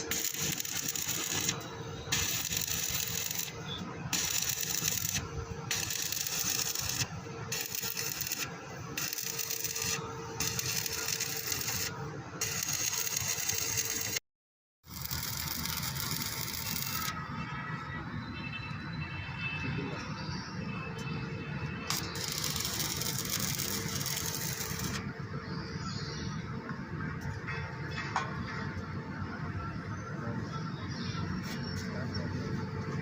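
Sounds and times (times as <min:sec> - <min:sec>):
welding arc crackling hiss: 0:00.0 - 0:14.2, 0:14.8 - 0:17.1, 0:21.9 - 0:25.1.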